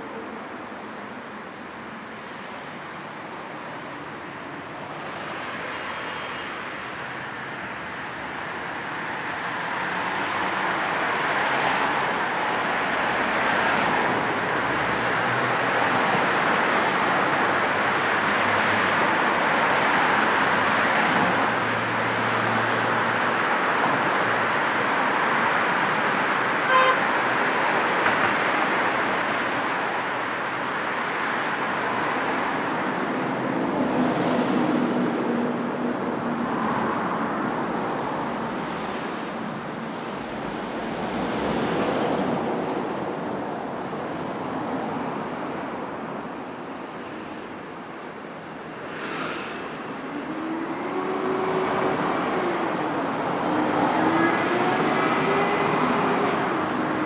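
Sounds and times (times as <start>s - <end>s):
cars passing: 6.6s - 57.0s
car horn toot: 26.7s - 27.0s.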